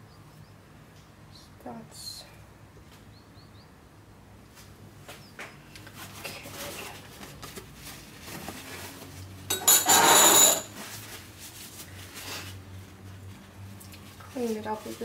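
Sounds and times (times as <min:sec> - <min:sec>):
utensils scraping a mixing bowl: 0:09.5 - 0:10.8.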